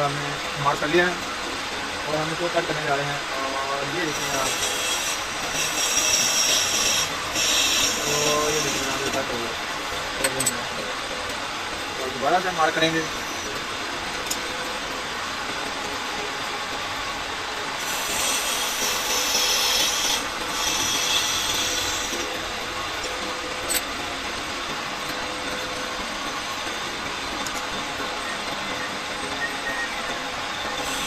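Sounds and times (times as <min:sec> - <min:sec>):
metal lathe running: 0:00.0 - 0:31.0
cutting tool scraping brass: 0:04.1 - 0:09.1, 0:17.8 - 0:22.3.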